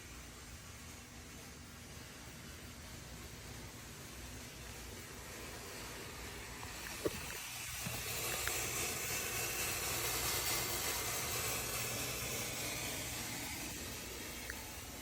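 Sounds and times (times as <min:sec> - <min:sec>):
low steady hum: 0:00.0 - 0:15.0
car hissing after engine shutoff: 0:05.4 - 0:15.0.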